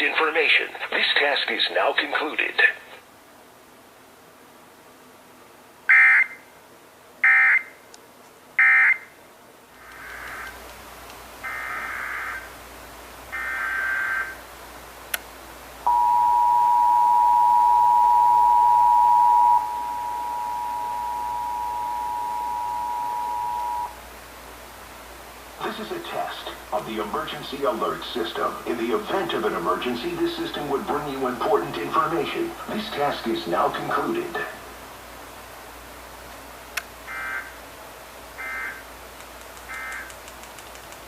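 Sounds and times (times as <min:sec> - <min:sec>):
short data bursts: 0:15.9 - 0:24.0
two-tone attention signal: 0:15.9 - 0:24.0.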